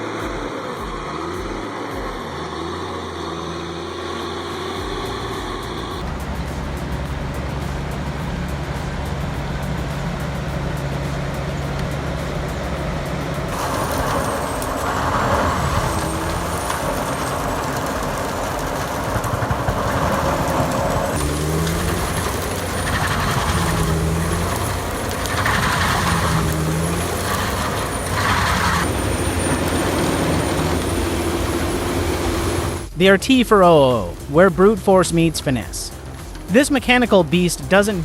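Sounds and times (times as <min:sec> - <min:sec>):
faint high wavering whine: 0:00.0 - 0:10.9
diesel machinery running: 0:00.0 - 0:38.0.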